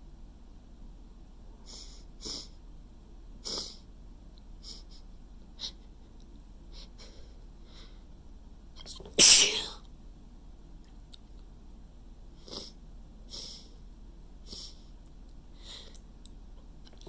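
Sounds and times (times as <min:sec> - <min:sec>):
person's short sharp breaths: 0:09.2 - 0:09.7.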